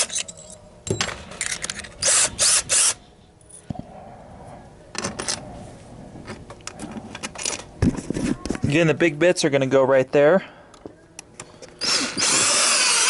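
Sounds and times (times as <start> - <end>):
drill-driver driving screws: 2.0 - 3.0, 11.8 - 13.0.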